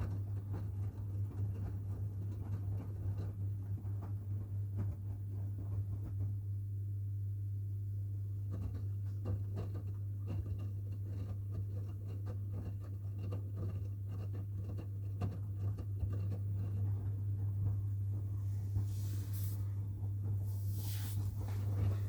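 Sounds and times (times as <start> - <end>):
washing machine humming: 8.2 - 22.0.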